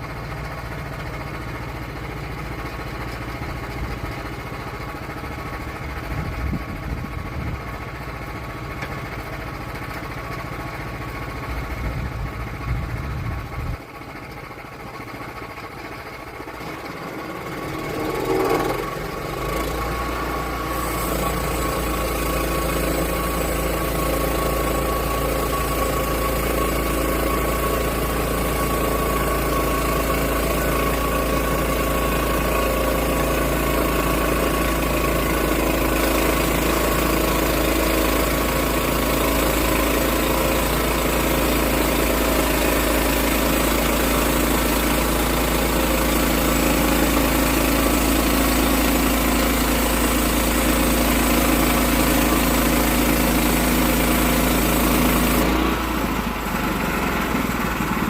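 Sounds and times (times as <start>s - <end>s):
engine running: 0.0s - 58.0s.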